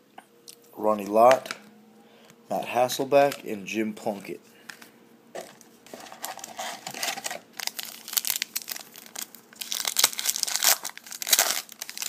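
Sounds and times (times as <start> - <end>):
foil wrapper crinkling and tearing: 5.9 - 12.0.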